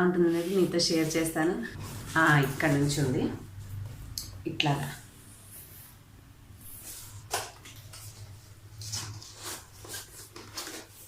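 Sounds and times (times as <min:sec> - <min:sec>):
cardboard package rustling and scraping: 0:00.2 - 0:03.4, 0:06.6 - 0:11.0.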